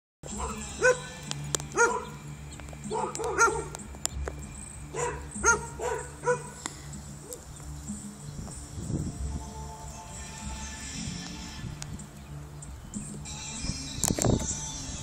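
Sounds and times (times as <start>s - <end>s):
dog barking: 0.4s - 1.1s, 1.8s - 2.2s, 2.9s - 3.8s, 4.9s - 6.6s.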